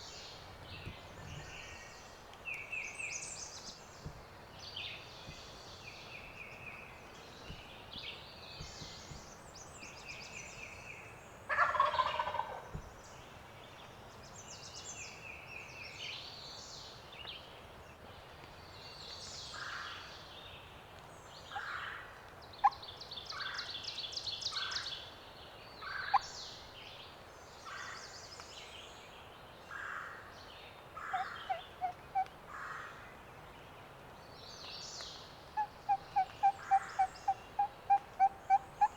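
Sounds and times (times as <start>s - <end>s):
songbirds singing: 0.0s - 38.9s
turkey gobbling: 11.5s - 12.6s, 31.1s - 32.3s, 35.6s - 38.9s.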